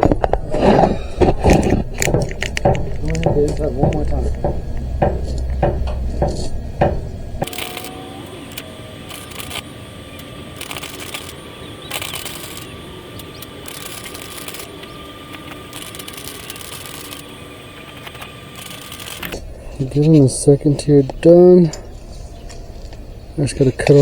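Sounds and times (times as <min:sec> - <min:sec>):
heavy knocks: 0:00.0 - 0:08.0
arc welding crackling and sizzling: 0:00.0 - 0:20.4.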